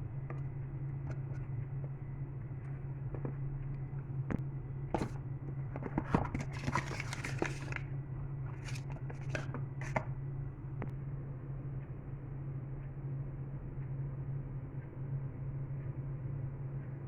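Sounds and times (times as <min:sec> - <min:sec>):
steady low hum: 0:00.0 - 0:17.0
packaging rustling and scraping: 0:05.0 - 0:07.9, 0:08.5 - 0:10.1.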